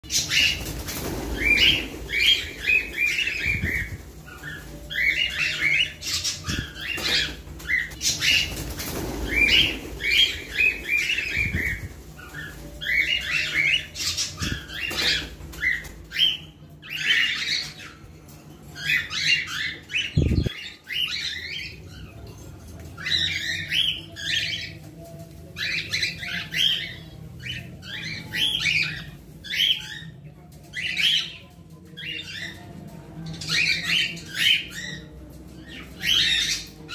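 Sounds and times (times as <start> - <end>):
cockatiels chirping: 0.1 - 18.0, 33.5 - 36.9.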